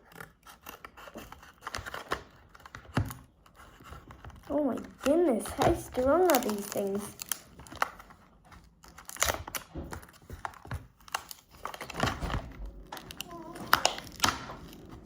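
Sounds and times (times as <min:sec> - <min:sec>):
plastic wrapper crinkling: 0:00.0 - 0:15.0.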